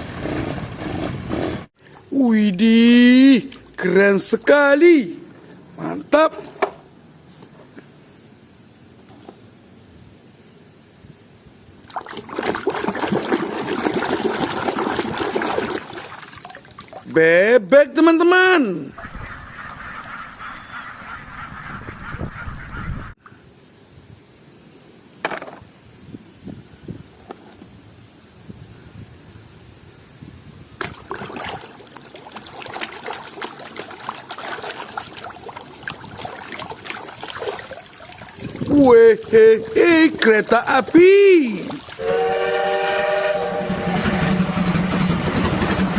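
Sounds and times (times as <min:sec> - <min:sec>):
water splashing and trickling: 0:11.8 - 0:17.3, 0:30.7 - 0:42.1.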